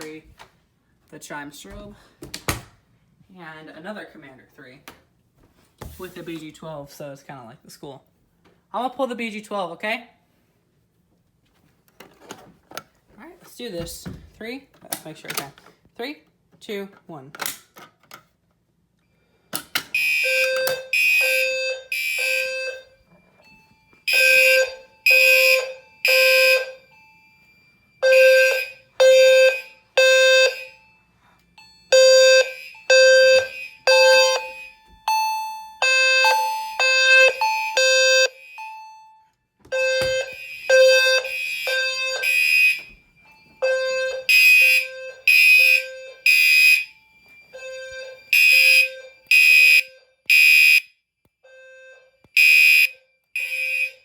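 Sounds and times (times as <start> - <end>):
fire alarm horn blasts: 19.9 - 54.0
low-frequency alarm sounder: 19.9 - 54.0.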